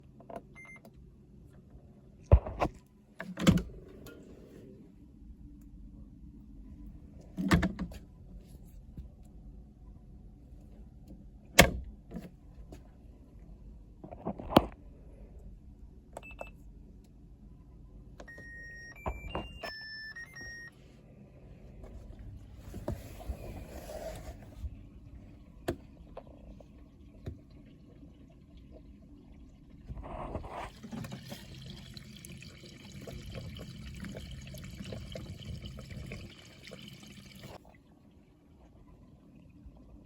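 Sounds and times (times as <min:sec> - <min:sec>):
washing machine control panel beeps: 0:00.4 - 0:00.9, 0:16.2 - 0:16.6, 0:18.2 - 0:20.8.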